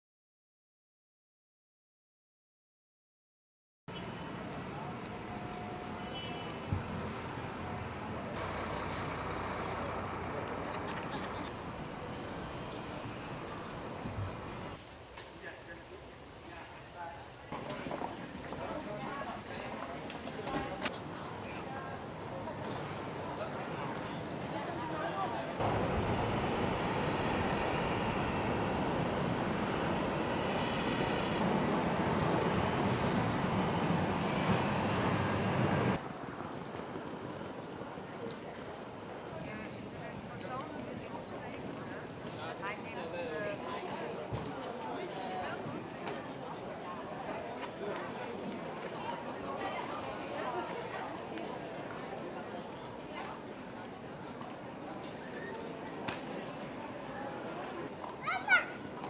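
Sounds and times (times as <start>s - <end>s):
vehicle noise: 3.9s - 14.8s, 17.5s - 39.3s
airliner engines running: 4.0s - 14.8s, 17.5s - 45.0s.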